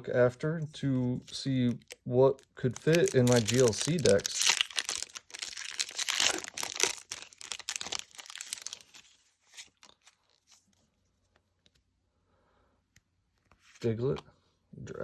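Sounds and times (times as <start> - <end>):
foil wrapper crinkling: 2.6 - 10.6.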